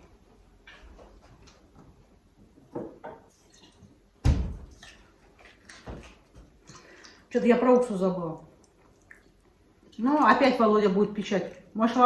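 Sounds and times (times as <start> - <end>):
kitchen things knocking and clattering: 2.7 - 3.3.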